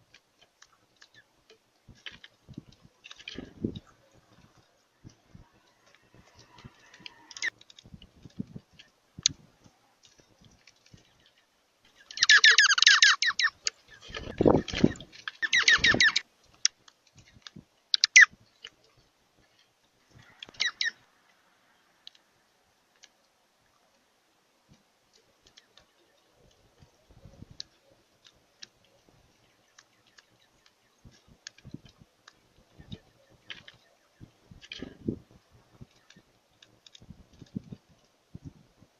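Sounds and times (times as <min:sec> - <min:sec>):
faint ticks: 0:00.0 - 0:12.3, 0:16.3 - 0:38.9
birds calling harshly: 0:11.0 - 0:16.3, 0:17.2 - 0:18.4, 0:20.1 - 0:21.1.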